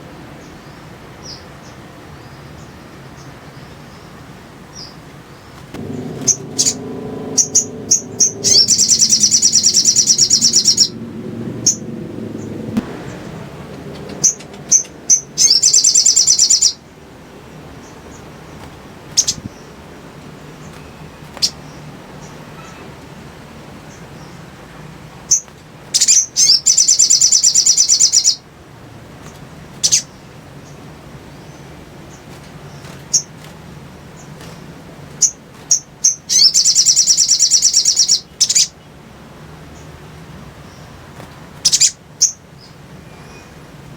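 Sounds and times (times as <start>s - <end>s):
bird fast repeated high notes: 5.9s - 11.0s
bird sharp chips: 18.5s - 19.7s, 20.6s - 22.8s.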